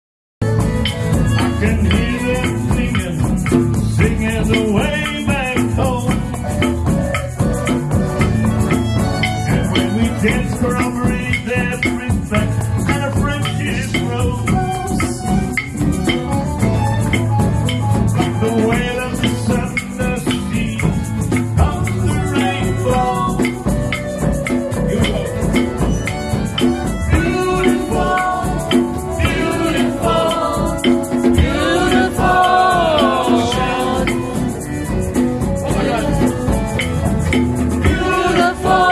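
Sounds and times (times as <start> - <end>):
melodic instrument parts: 0.4 - 38.9
shaker percussion rattling: 0.4 - 38.9
steady bass line: 0.4 - 38.9.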